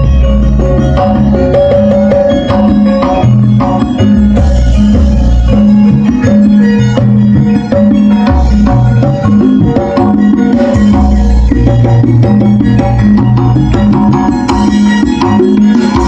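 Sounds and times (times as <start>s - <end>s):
loud music with drum beat: 0.0s - 16.0s.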